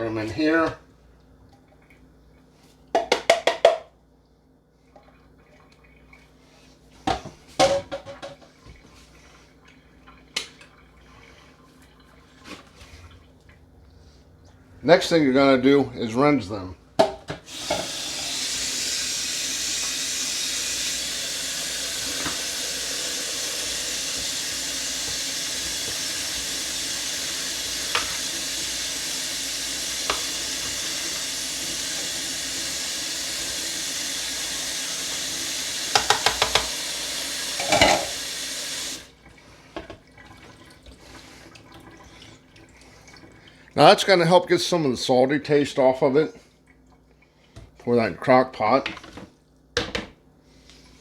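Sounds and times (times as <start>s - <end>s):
kitchen tap running: 2.9s - 3.9s, 17.0s - 44.5s.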